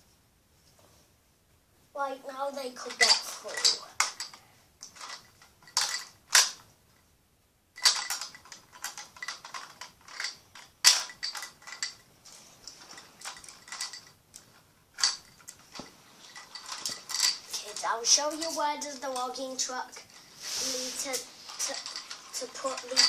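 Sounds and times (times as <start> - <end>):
plastic toy parts clattering: 2.7 - 6.7, 7.8 - 23.0.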